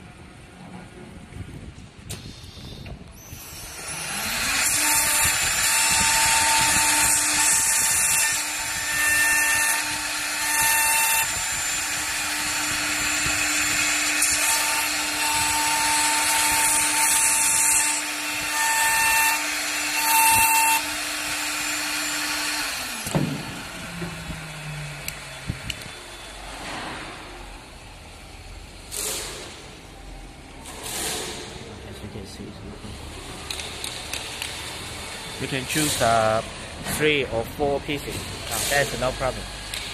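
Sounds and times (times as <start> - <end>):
router spindle cutting wood: 3.3 - 25.9.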